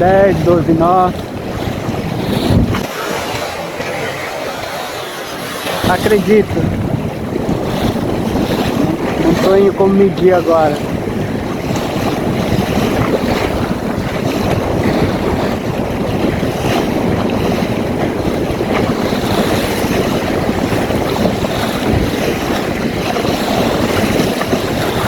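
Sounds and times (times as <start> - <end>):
water washing along hull: 0.0 - 25.0
wind buffeting microphone: 0.0 - 25.0.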